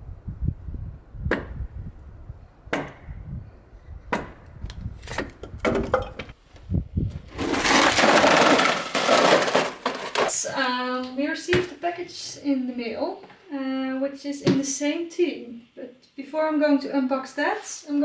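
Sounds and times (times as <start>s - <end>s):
hollow wooden knocks: 4.1s - 6.4s
loud dense rustling: 7.2s - 10.4s.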